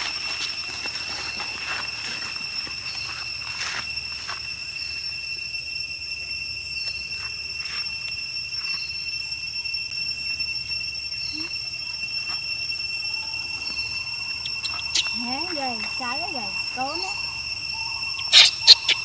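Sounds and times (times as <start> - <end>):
high-pitched insect drone: 0.0 - 19.0
short chirps: 10.6 - 15.8.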